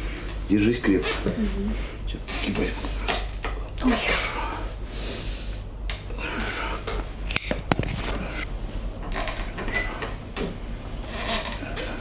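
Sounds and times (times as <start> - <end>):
spinal joints popping: 6.8 - 12.0.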